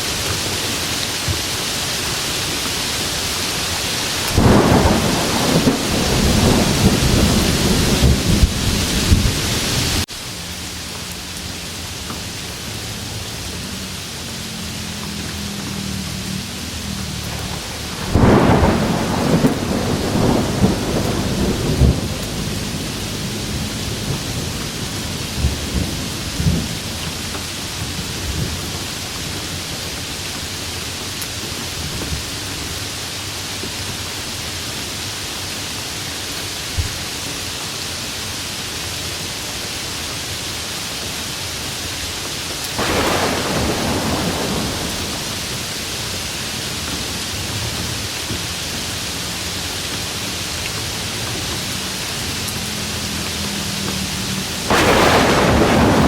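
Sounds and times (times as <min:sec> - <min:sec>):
heavy rain: 0:00.0 - 0:56.0
thunder cracking and rumbling: 0:03.2 - 0:10.0, 0:15.4 - 0:29.9, 0:42.7 - 0:48.1, 0:54.6 - 0:56.0.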